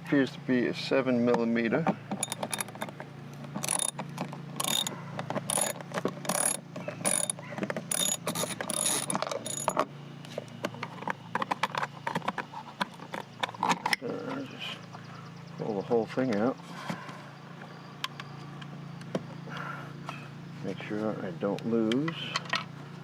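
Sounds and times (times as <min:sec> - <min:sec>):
socket ratchet clicking: 0:02.2 - 0:02.9, 0:03.6 - 0:04.0, 0:04.6 - 0:09.8.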